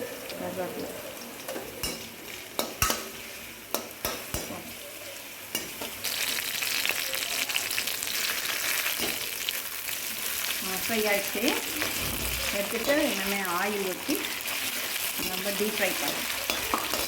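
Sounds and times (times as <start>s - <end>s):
food sizzling in hot oil: 0.0s - 17.0s
spoon clicking against pan: 2.6s - 3.1s.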